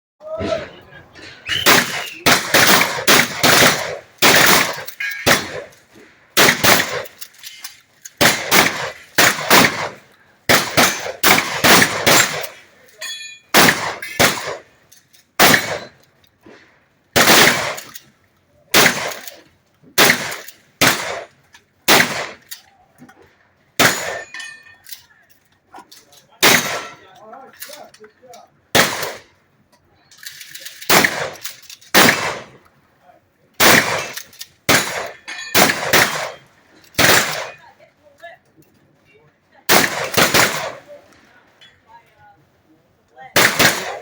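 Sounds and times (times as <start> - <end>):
shotgun shots: 1.5 - 5.7, 6.4 - 7.2, 8.2 - 12.6, 13.5 - 14.7, 15.4 - 16.0, 17.2 - 17.9, 18.7 - 19.4, 20.0 - 21.3, 21.9 - 22.4, 23.8 - 24.3, 26.4 - 27.0, 28.7 - 29.3, 30.9 - 32.6, 33.6 - 37.6, 39.7 - 41.0, 43.4 - 44.0.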